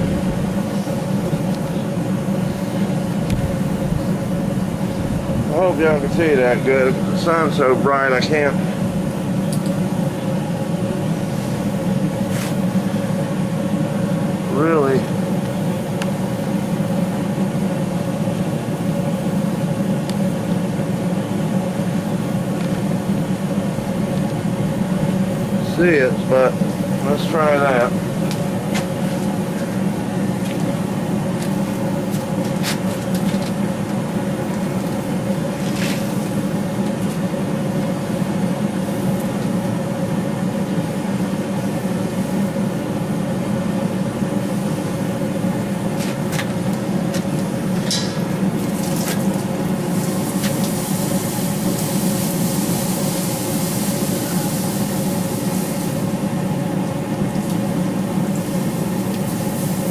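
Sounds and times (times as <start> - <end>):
hiss: 48.6 - 59.9.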